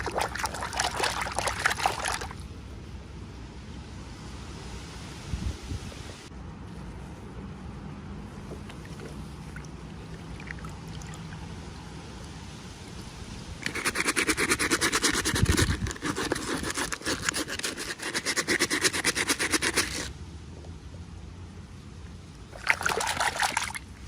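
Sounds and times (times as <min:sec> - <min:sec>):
rapid rasping clicking scrape: 0:13.6 - 0:20.1.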